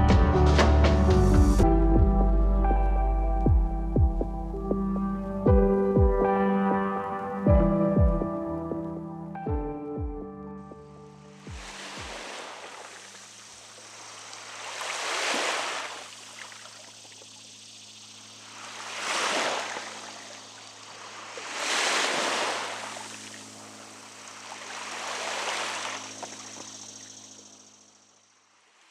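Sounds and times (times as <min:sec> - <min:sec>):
small waves washing on shore: 0:11.3 - 0:17.6, 0:18.3 - 0:27.2.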